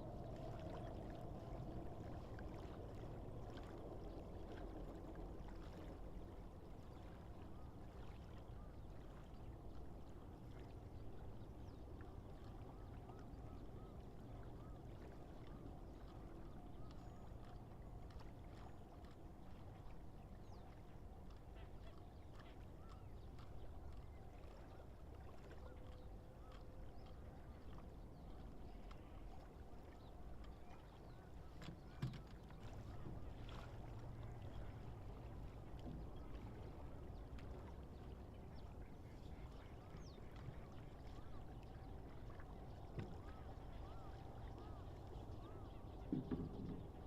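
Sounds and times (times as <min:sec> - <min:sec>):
faint bird calls: 0:39.0 - 0:47.0.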